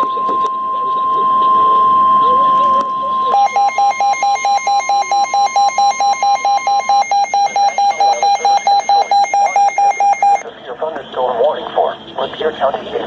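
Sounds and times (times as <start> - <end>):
faint steady alarm tone: 0.0 - 10.4
rapid electronic beeps: 0.0 - 10.4.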